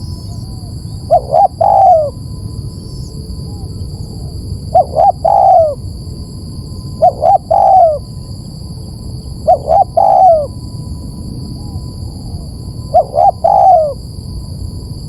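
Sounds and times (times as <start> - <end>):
dove cooing: 0.0 - 2.2, 3.5 - 5.8, 7.0 - 8.1, 9.4 - 10.6, 11.6 - 14.0
steady low hum: 0.0 - 15.0.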